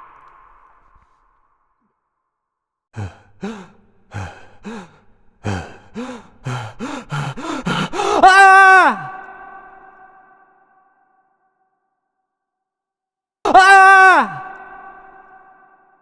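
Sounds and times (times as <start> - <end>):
person gasping cries: 3.0 - 9.3
person screaming: 7.0 - 9.8, 13.5 - 15.6.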